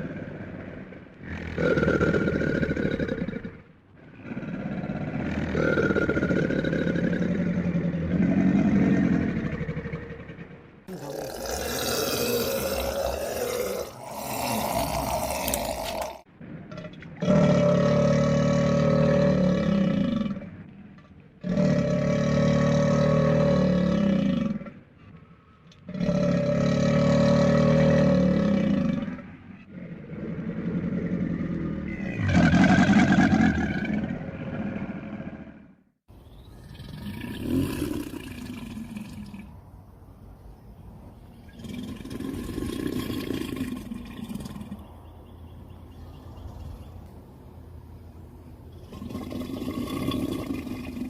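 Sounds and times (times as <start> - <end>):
crocodile bellowing: 0.0 - 20.6, 25.9 - 35.7, 36.4 - 39.5.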